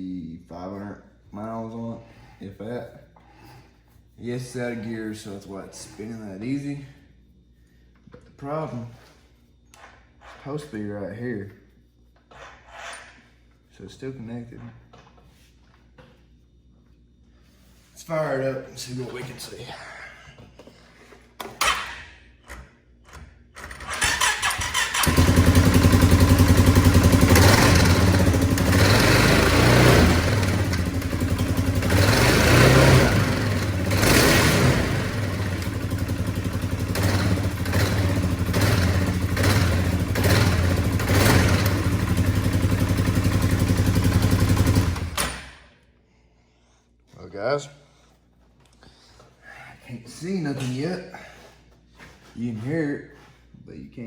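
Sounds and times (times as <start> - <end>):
clutch noise: 23.6 - 45.6
engine cranking and starting: 23.6 - 45.7
atv engine running: 23.8 - 45.3.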